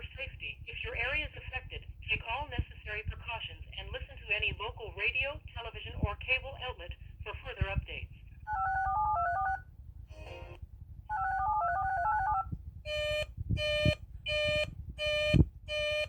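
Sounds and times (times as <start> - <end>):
touch-tone beeps: 8.5 - 9.6, 10.2 - 14.4.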